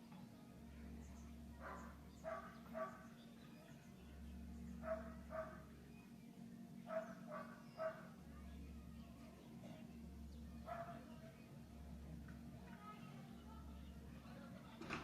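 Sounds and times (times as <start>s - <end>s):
low electrical hum: 0.0s - 15.0s
dog barking: 1.6s - 3.1s, 4.8s - 5.6s, 6.9s - 8.1s, 10.7s - 11.0s.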